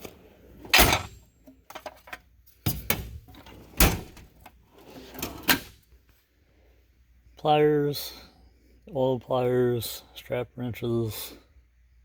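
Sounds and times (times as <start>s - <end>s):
steel drawers sliding: 0.0s - 5.8s.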